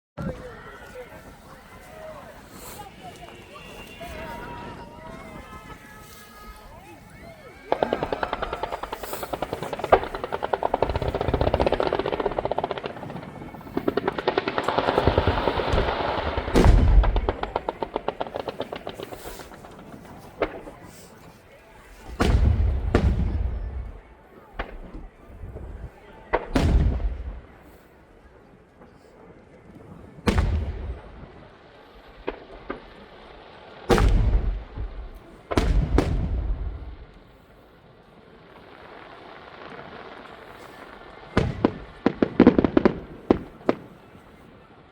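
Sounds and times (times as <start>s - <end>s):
fireworks crackling bangs: 0.2s - 44.9s
heavy deep boom: 15.0s - 17.6s.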